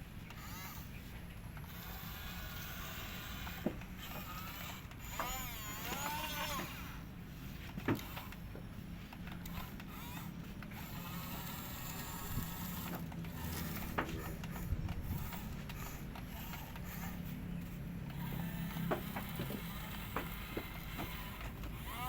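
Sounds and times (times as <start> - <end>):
excavator diesel engine running: 0.0 - 22.0
machinery clanks and knocks: 12.8 - 21.9.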